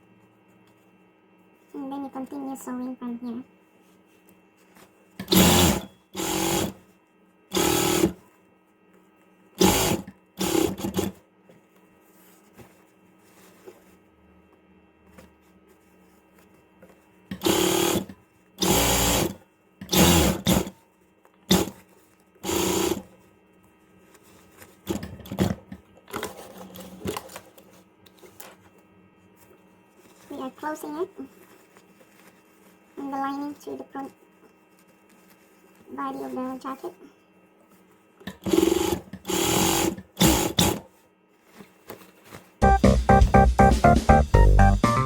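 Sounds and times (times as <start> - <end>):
sewing machine stitching: 5.2 - 6.8, 7.5 - 8.2, 9.6 - 11.2, 17.3 - 20.8, 21.5 - 21.8, 22.4 - 23.0, 38.3 - 40.9.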